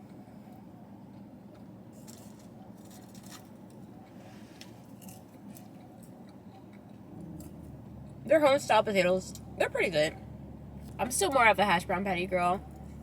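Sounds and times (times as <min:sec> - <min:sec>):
chewing crunches and clicks: 0:00.0 - 0:04.0, 0:04.6 - 0:08.2
low room hum: 0:00.0 - 0:13.0.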